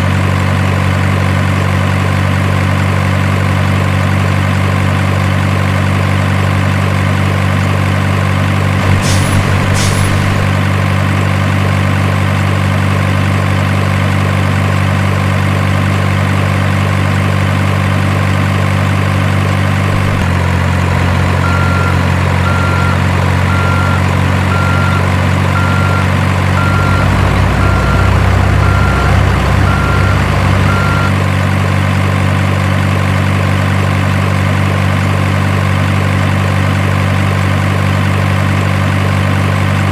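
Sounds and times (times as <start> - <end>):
diesel truck idling: 0.0 - 39.9
low rumble: 8.7 - 11.6
reversing beeps: 21.4 - 31.2.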